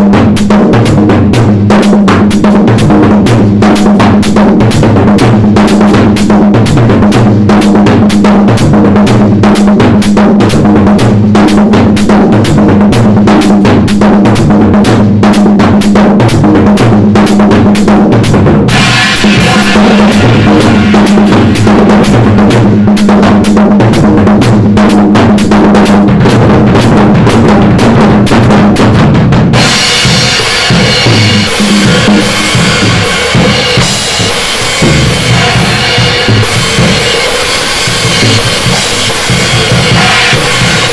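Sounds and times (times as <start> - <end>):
bass drum and snare groove: 0.0 - 40.9
low drum ring: 0.0 - 40.9
cymbals: 18.6 - 24.1, 29.5 - 40.9.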